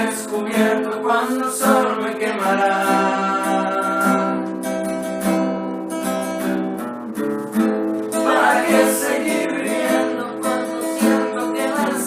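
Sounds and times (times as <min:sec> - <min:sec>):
man singing: 0:00.0 - 0:04.5, 0:08.3 - 0:12.0
acoustic guitar strumming: 0:00.0 - 0:12.0.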